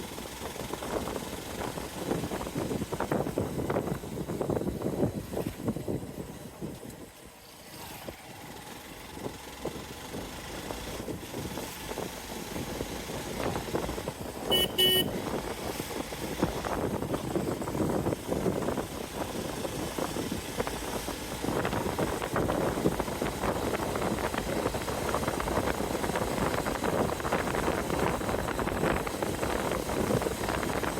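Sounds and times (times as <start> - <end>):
wind and road noise: 0.0 - 30.9
motorcycle engine running: 8.0 - 30.9
vehicle horn beeping: 14.4 - 15.2.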